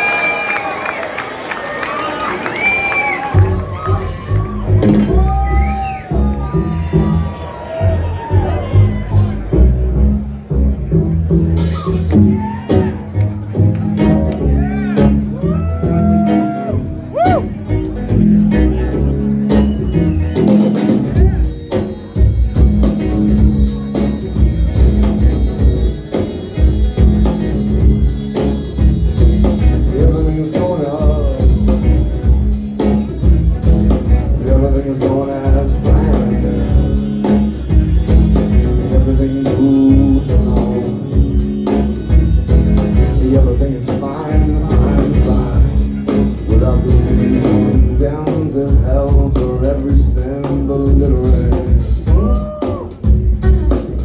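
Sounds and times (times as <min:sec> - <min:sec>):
guitar: 0:03.0 - 0:54.0
upright bass line: 0:03.4 - 0:54.0
drum kit beat: 0:11.0 - 0:17.5, 0:19.4 - 0:54.0.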